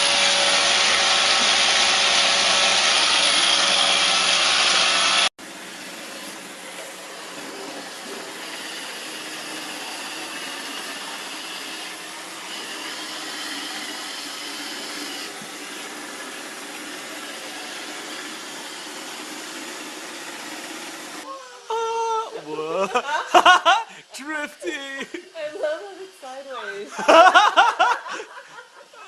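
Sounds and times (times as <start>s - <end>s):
robot vacuum cleaner whirring: 0.0s - 21.3s.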